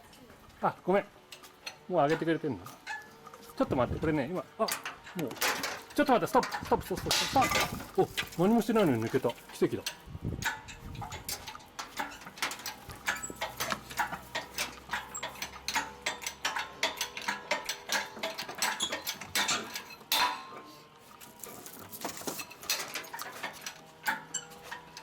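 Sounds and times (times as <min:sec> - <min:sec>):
metallic clinks and knocks: 0:04.7 - 0:20.7, 0:21.3 - 0:25.0.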